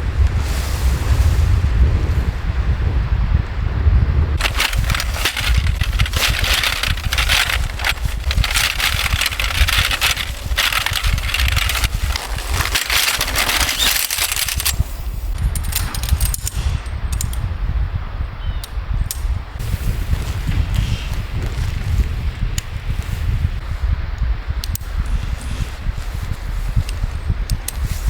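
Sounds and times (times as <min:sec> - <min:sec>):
wind buffeting microphone: 0:00.0 - 0:28.0
dense rapid crackling: 0:04.4 - 0:16.5
sharp clicks: 0:04.4 - 0:17.4.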